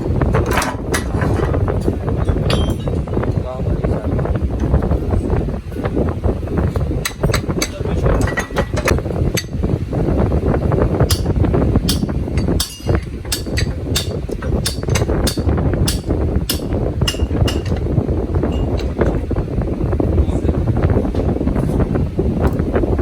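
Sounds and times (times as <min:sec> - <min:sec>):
low rumble: 0:00.0 - 0:23.0
hammer striking metal: 0:11.1 - 0:17.9.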